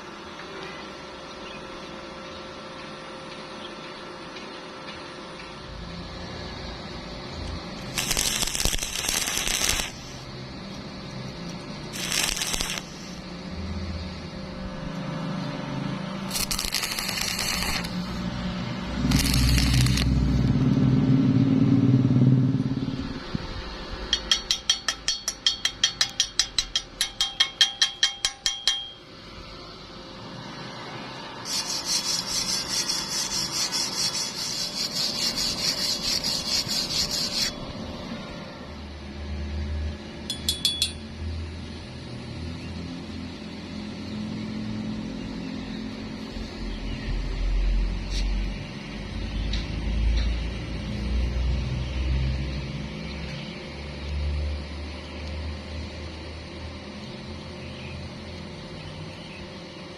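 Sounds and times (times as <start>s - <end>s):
welding arc crackle: 7.4s - 13.4s, 16.0s - 20.8s, 31.4s - 37.6s
low rumble: 16.4s - 24.1s
sharp metal taps: 24.1s - 29.0s, 40.3s - 41.1s.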